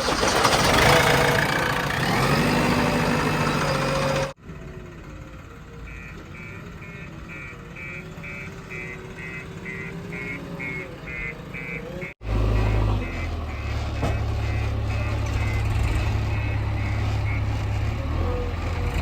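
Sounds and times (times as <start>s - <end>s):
diesel engine running: 0.0s - 19.0s
reversing alarm beeping: 5.8s - 18.0s.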